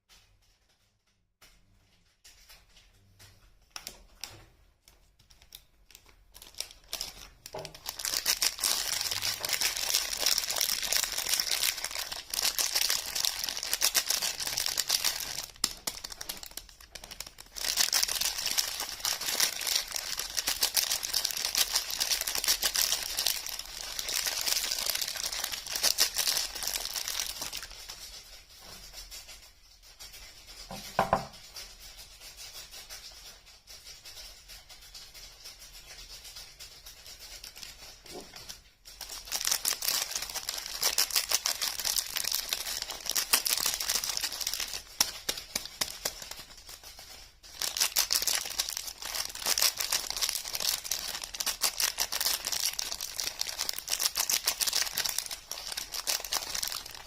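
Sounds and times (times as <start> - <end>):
soap wrapper crinkling and tearing: 5.3 - 28.0, 37.5 - 57.0.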